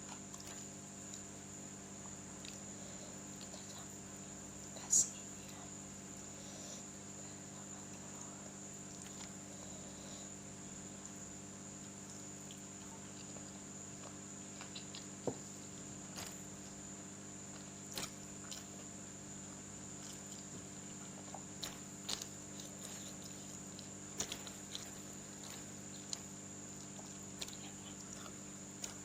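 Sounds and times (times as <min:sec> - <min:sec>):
electrical hum: 0:00.0 - 0:29.0
faint high whine: 0:00.0 - 0:29.0
person chewing: 0:11.8 - 0:16.6, 0:17.5 - 0:19.0, 0:19.9 - 0:29.0.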